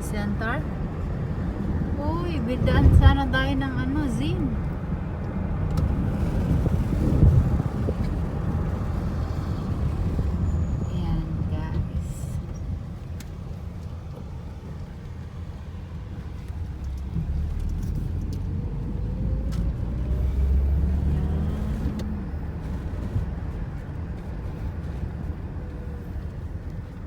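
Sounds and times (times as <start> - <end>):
car engine and road rumble: 0.0 - 27.0.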